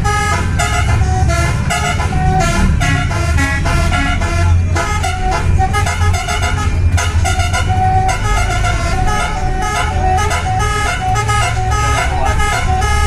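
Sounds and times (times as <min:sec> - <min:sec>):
bus engine running: 0:00.0 - 0:13.0
multi-tone horn playing a tune: 0:00.0 - 0:13.0.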